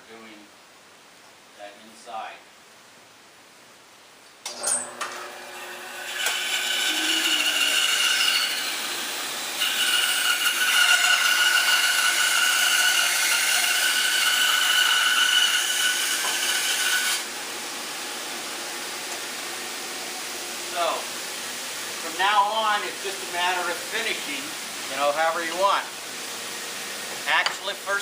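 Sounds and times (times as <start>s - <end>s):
bandsaw cutting wood: 4.5s - 17.3s.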